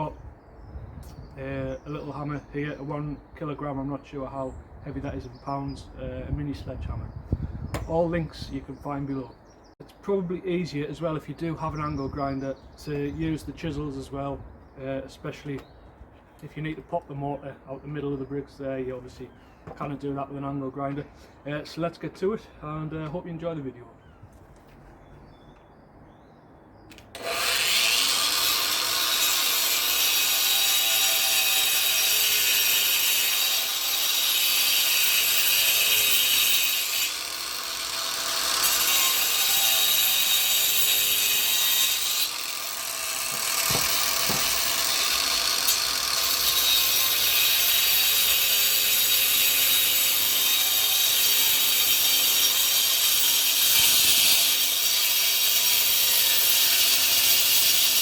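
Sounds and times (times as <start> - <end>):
angle grinder grinding mortar: 27.1 - 58.0.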